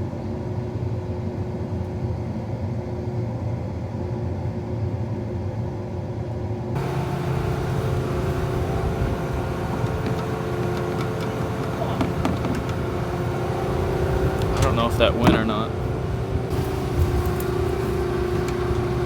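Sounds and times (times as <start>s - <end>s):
combine harvester rumbling: 6.8s - 19.0s
faint hum: 6.8s - 19.0s.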